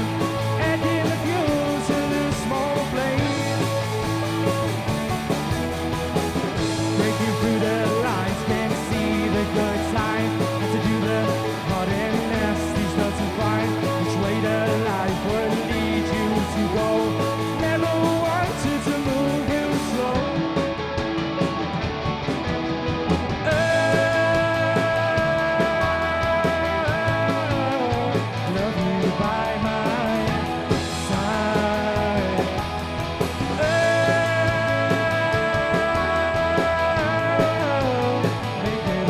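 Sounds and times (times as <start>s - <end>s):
rock band instrumental: 0.0s - 39.0s.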